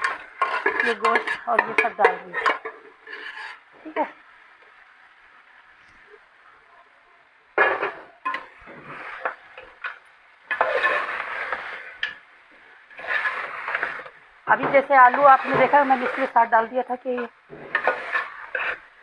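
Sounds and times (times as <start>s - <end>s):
metal spoon scraping cooking pot: 0.0s - 3.6s, 7.6s - 12.2s, 12.9s - 19.0s.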